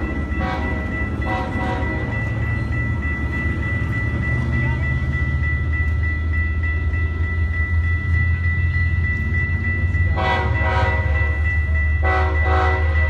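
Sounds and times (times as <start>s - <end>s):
train rumbling past: 0.0s - 13.0s
train horn blasts: 0.4s - 2.1s, 10.1s - 11.2s, 12.0s - 13.0s.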